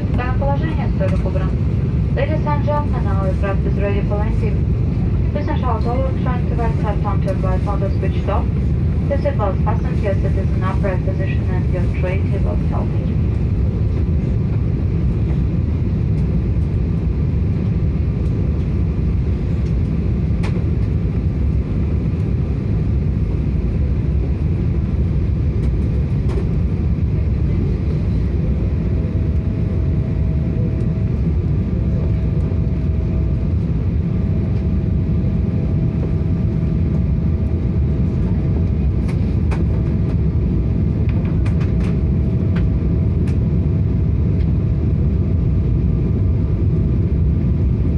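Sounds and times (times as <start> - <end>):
aircraft cabin engine rumble: 0.0 - 47.9.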